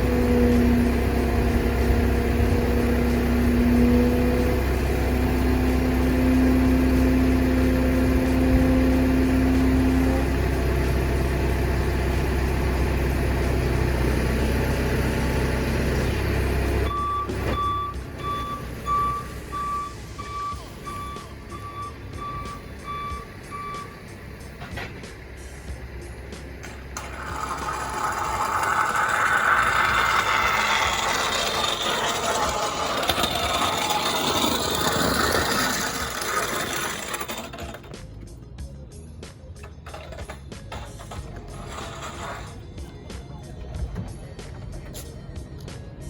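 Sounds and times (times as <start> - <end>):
truck engine droning: 0.0 - 46.0
reversing alarm beeping: 16.9 - 24.0.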